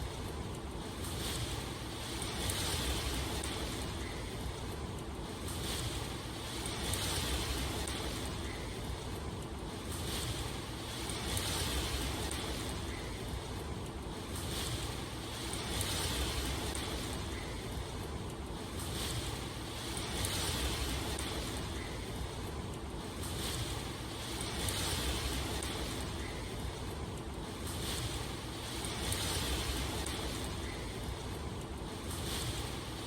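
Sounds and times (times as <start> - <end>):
rushing water: 5.4 - 8.9, 9.7 - 18.0, 18.6 - 22.4, 23.0 - 31.3.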